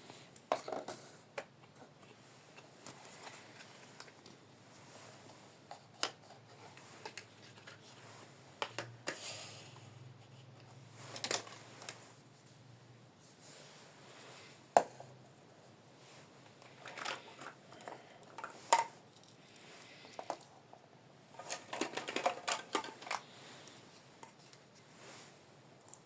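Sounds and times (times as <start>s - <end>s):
packaging rustle: 21.4s - 24.7s.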